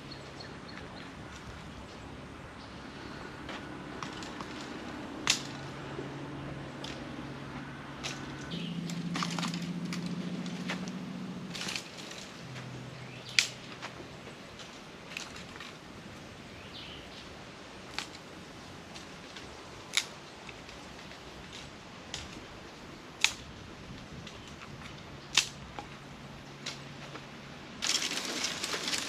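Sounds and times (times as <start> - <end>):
low steady hum: 0.0 - 29.0
sharp snapping clicks: 13.3 - 13.6, 23.2 - 23.5.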